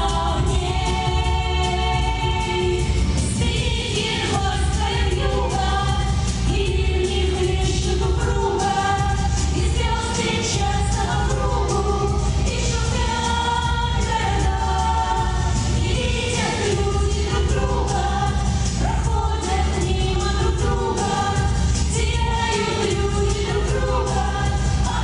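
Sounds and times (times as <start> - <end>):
bass accompaniment: 0.0 - 25.0
choir singing: 0.0 - 25.0.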